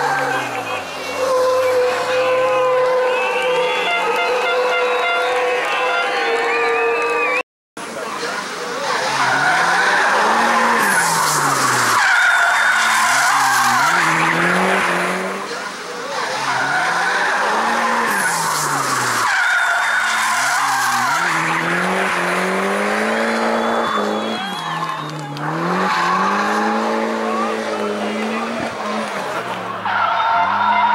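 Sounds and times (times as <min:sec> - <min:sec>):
car engine revving hard: 0:08.8 - 0:19.3, 0:20.1 - 0:24.4, 0:25.2 - 0:29.9.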